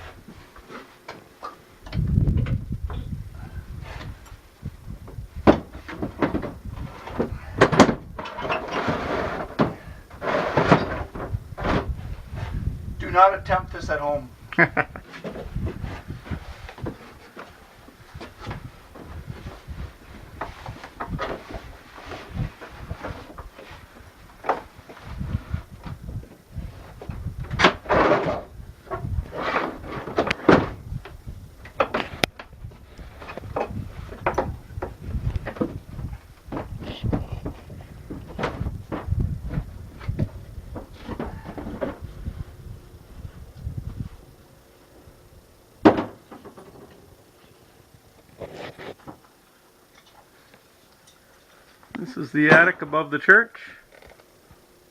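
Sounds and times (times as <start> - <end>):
scraping rustle: 0.0 - 14.3, 14.9 - 52.8
knocks and thumps: 5.0 - 12.6, 15.1 - 32.5, 33.2 - 42.1, 45.8 - 47.0.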